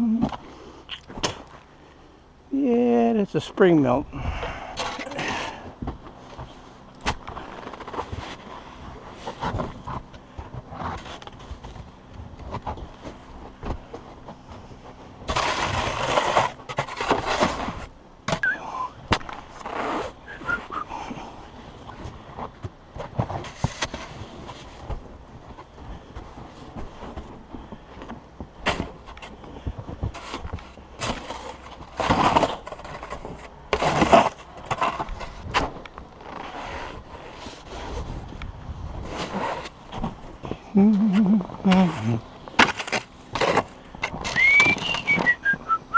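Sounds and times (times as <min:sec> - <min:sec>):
snow shovel scraping snow: 0:15.3 - 0:18.6, 0:19.5 - 0:20.6, 0:23.2 - 0:24.9, 0:30.0 - 0:38.2, 0:39.0 - 0:40.0.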